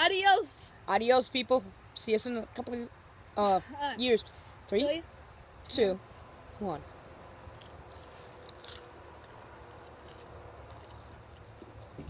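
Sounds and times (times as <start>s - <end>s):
crisp crunch: 7.5s - 11.9s
quiet chewing: 7.5s - 12.0s.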